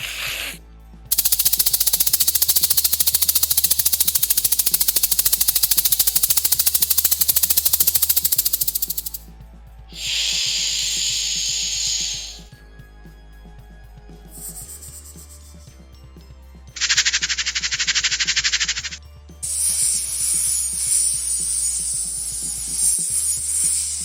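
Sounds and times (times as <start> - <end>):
snake hissing: 0.0 - 9.2, 9.9 - 12.5, 16.8 - 24.0.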